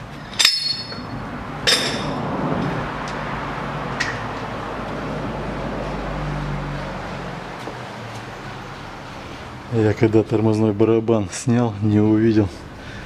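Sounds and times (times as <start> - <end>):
metal clink with ring: 0.2 - 2.2.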